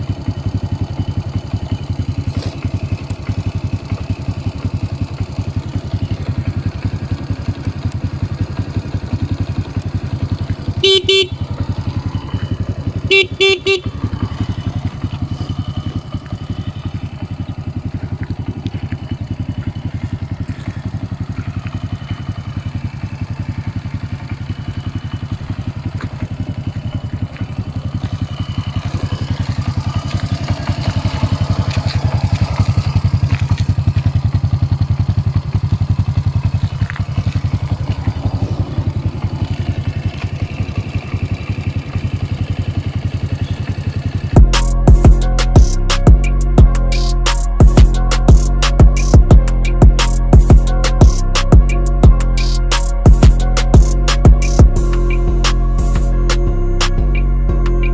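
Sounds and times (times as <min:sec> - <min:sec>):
motorcycle engine idling: 0:00.0 - 0:57.9
horn beeps: 0:10.6 - 0:17.8.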